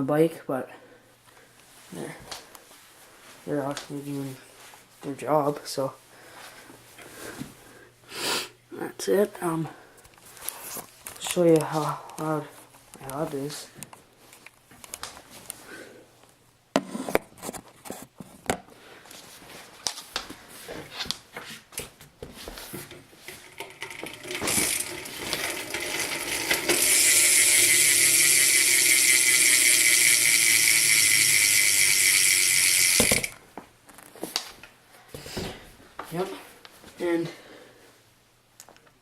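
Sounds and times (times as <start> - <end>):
bicycle hub freewheel ratcheting: 23.3 - 33.4.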